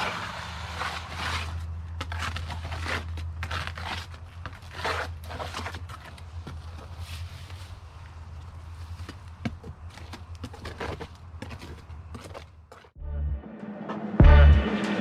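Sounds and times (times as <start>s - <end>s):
short scraping strokes: 0.0s - 3.1s.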